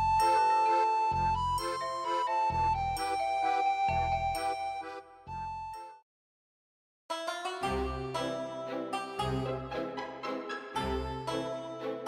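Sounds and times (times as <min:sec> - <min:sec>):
chiming bell-like melody: 0:00.0 - 0:04.8.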